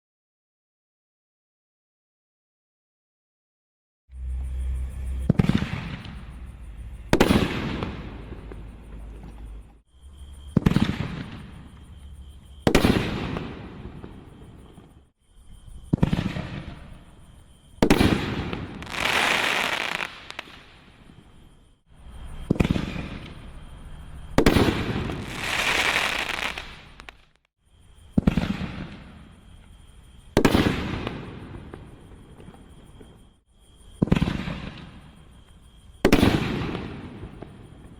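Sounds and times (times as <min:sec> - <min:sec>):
firework shells booming: 0:07.0 - 0:09.7, 0:10.5 - 0:11.8, 0:12.6 - 0:15.0, 0:22.4 - 0:23.5, 0:24.4 - 0:27.3, 0:28.2 - 0:29.2, 0:30.3 - 0:33.2
firework hissing: 0:18.8 - 0:20.7, 0:24.6 - 0:27.3.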